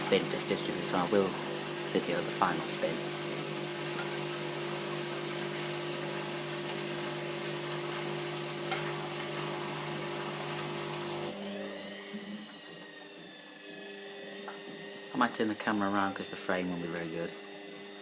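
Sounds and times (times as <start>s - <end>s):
water rushing in washing machine: 0.0s - 13.9s
machine low hum: 0.0s - 18.0s
motor whine rising in pitch: 0.0s - 18.0s.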